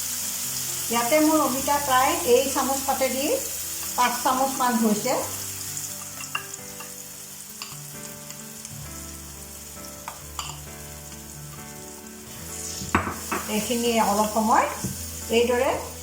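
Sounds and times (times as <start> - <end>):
paste sizzling in hot oil: 0.0 - 16.0
soft background music: 0.0 - 16.0
spoon clicking against pan: 10.1 - 10.6.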